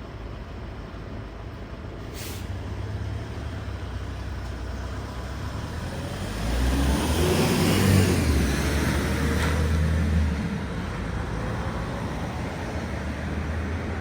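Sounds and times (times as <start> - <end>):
road traffic: 0.0 - 14.0
short hiss: 2.0 - 2.5.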